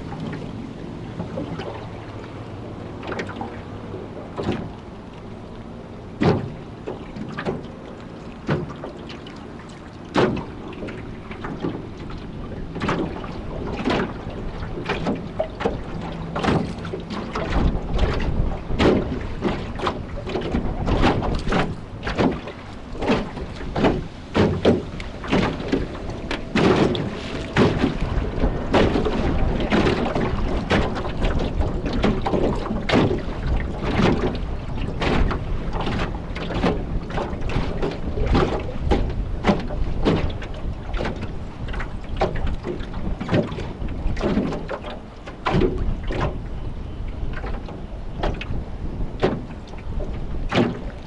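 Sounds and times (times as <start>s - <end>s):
gusting wind on microphone: 0.0s - 51.0s
rough river water: 0.0s - 51.0s
low rumble: 15.5s - 33.8s.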